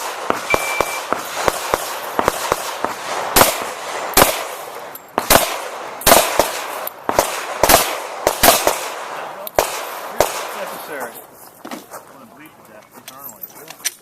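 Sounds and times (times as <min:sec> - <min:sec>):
pistol shots with echo: 0:00.0 - 0:11.2.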